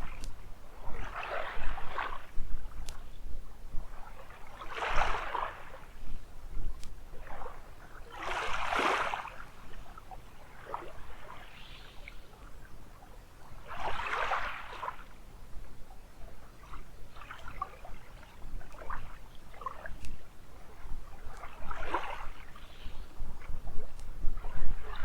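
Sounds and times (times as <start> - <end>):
faint clicks: 0.0 - 0.4, 2.7 - 3.2, 6.6 - 7.0, 20.0 - 20.3, 23.4 - 24.2
wind rumble on microphone: 0.0 - 9.9, 13.4 - 25.0
small waves washing on sand: 0.0 - 12.5, 13.4 - 15.2, 16.4 - 25.0.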